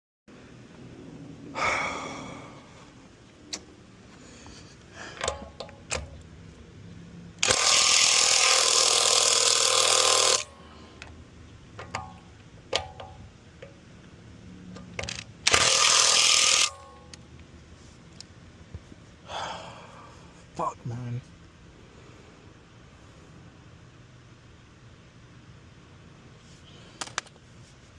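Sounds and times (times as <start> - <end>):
metallic clicks and knocks: 5.2 - 6.3, 11.0 - 13.8, 14.7 - 15.7
impact wrench hammering: 7.4 - 10.5, 11.8 - 13.2.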